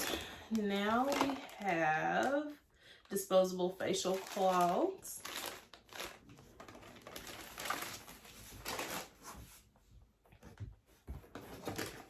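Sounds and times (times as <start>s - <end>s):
packaging rustling and crinkling: 0.0s - 2.5s, 4.0s - 9.5s, 11.2s - 12.0s.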